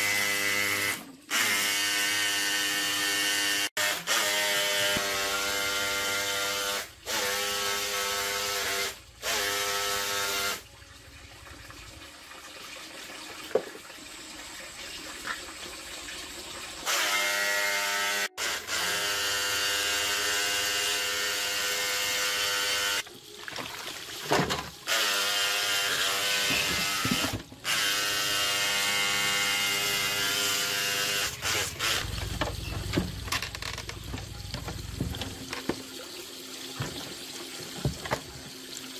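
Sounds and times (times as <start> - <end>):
small power tool motor: 0.0 - 10.6, 16.8 - 23.0, 24.9 - 34.0.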